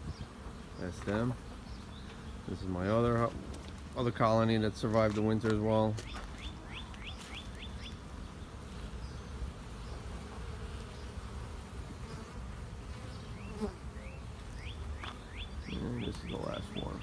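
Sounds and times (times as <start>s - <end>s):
honeybees buzzing: 0.0s - 17.0s
bird chirping: 6.0s - 8.4s, 13.0s - 17.0s.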